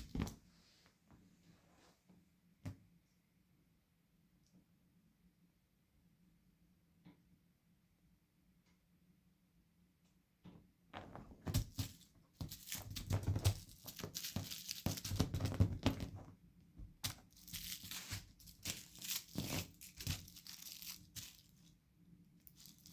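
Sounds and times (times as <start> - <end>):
crinkly material rustling: 0.0 - 2.2, 11.0 - 21.8, 22.4 - 22.9.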